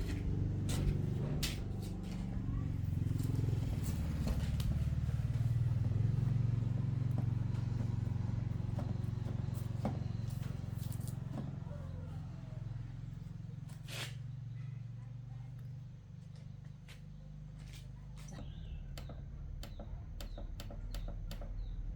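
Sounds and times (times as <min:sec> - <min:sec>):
low motor drone: 0:00.0 - 0:16.8.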